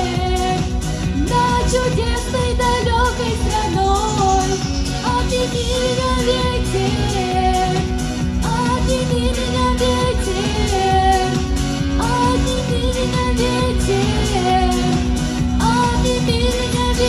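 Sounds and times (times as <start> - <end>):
person singing a song: 0.0 - 17.0.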